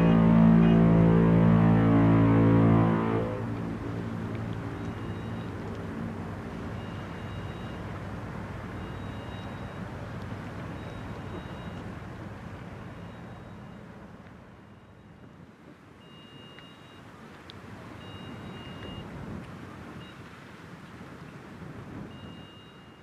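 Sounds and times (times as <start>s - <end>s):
faint two-tone electronic beep: 10.8s - 11.8s, 14.7s - 15.4s, 16.0s - 17.1s, 18.0s - 19.1s, 22.1s - 23.0s.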